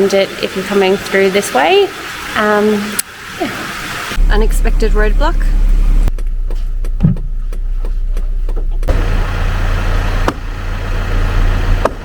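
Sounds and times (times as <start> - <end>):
engine running: 4.2 - 12.0.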